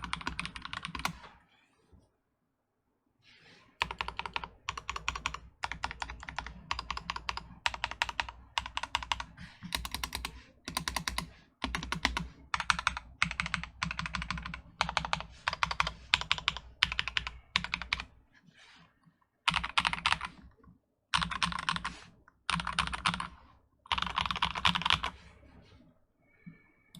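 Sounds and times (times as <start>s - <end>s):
typing on mechanical keyboard: 0.0s - 1.2s, 3.8s - 18.1s, 19.5s - 25.2s.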